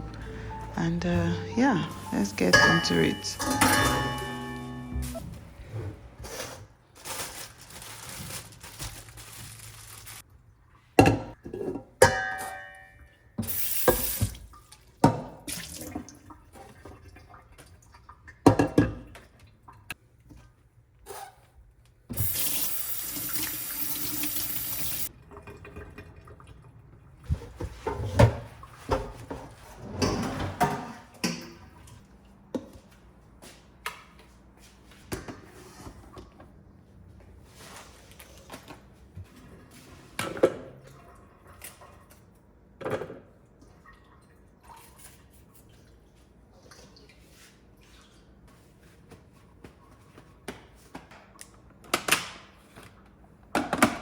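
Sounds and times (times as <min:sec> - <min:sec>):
dishes and utensils clinking: 0:00.0 - 0:05.2, 0:11.1 - 0:13.2.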